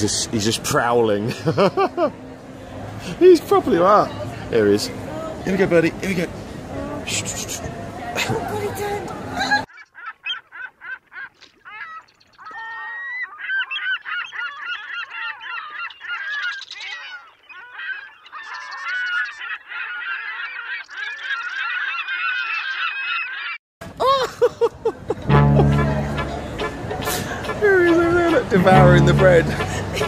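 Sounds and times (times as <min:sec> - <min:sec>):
gulls squawking: 0:08.4 - 0:23.6, 0:25.3 - 0:30.0.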